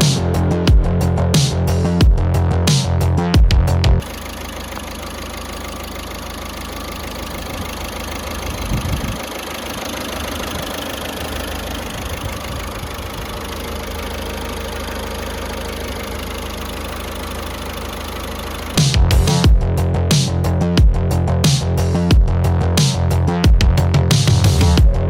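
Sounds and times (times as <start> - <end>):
diesel engine idling: 0.0 - 25.0.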